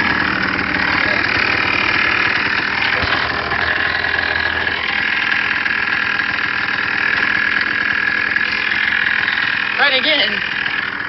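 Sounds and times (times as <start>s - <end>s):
quad bike engine running: 0.0s - 11.0s.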